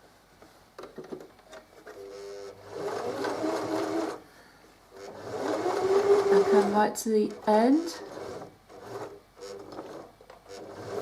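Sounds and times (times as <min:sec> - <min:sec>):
sewing machine stitching: 0:01.9 - 0:04.2, 0:04.9 - 0:11.0.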